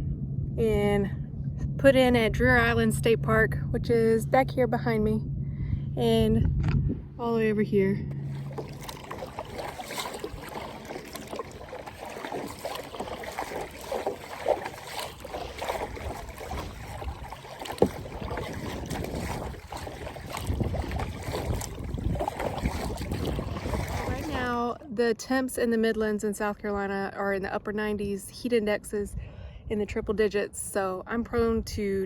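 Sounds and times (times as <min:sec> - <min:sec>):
wind rumbling on microphone: 0:00.0 - 0:24.9, 0:26.0 - 0:32.0
water lapping against kayak: 0:08.1 - 0:24.9.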